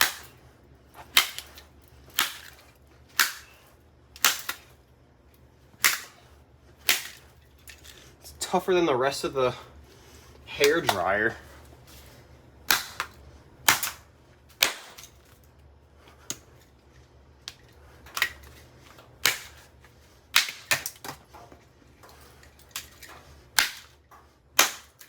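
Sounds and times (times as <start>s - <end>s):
plastic being smashed: 1.1s - 3.5s, 6.8s - 8.0s, 12.6s - 15.4s, 20.3s - 21.4s, 22.6s - 25.0s.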